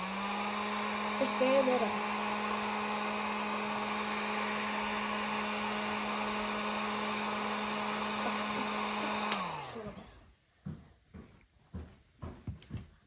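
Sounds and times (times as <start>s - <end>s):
hot-air blower running: 0.0s - 10.3s.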